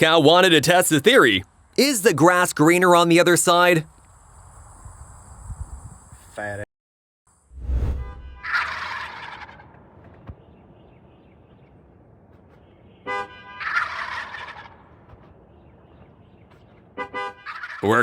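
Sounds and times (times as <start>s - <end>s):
turkeys gobbling: 8.4s - 9.9s, 13.6s - 15.4s, 17.4s - 18.0s.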